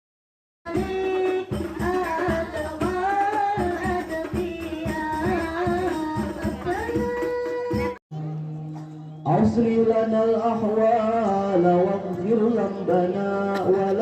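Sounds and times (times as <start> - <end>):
hand drum beat: 0.7 - 8.0
person singing: 0.7 - 14.0.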